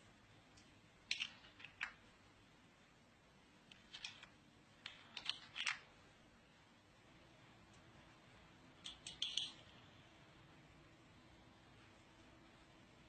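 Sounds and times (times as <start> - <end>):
quiet room hum: 0.0 - 13.0.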